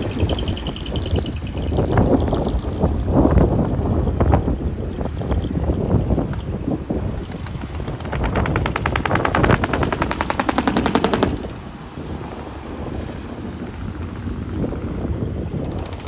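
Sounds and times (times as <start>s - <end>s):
fast machine-gun-like rattle: 7.1s - 16.0s.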